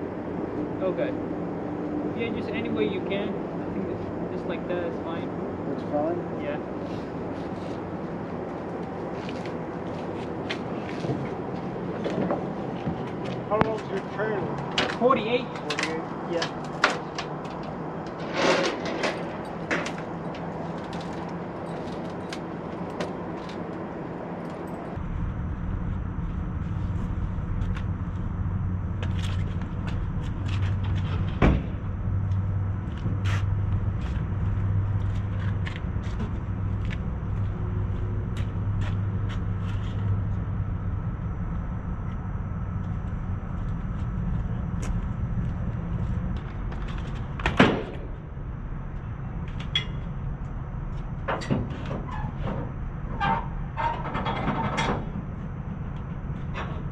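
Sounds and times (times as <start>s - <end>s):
vehicle engine running: 19.5s - 56.9s.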